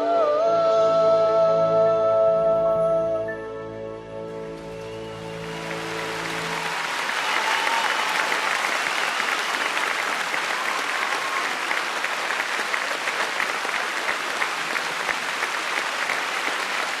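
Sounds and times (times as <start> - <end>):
audience applauding: 4.5 - 17.0.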